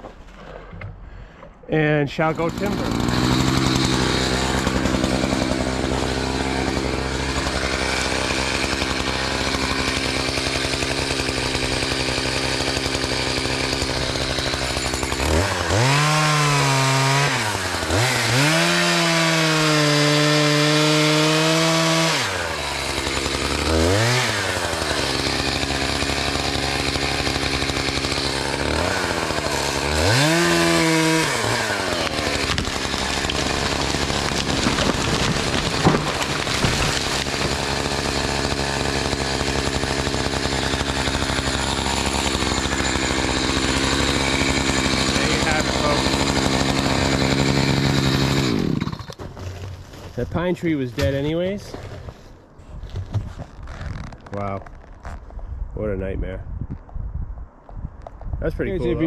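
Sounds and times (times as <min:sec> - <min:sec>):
chainsaw running and revving: 0:02.1 - 0:49.3.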